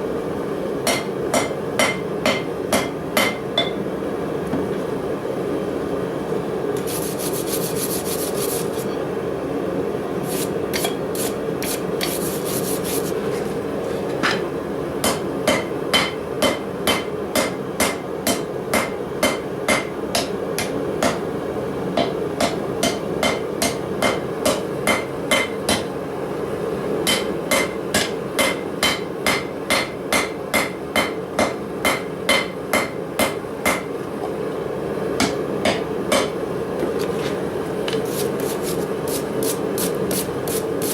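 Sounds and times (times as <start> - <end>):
steady background hum: 0.0 - 40.9
hammer striking steel on anvil: 0.9 - 3.8, 15.0 - 21.2, 22.0 - 25.9, 27.0 - 33.9, 35.2 - 36.4
hissy scraping: 6.8 - 9.0, 11.2 - 13.3, 38.0 - 40.9.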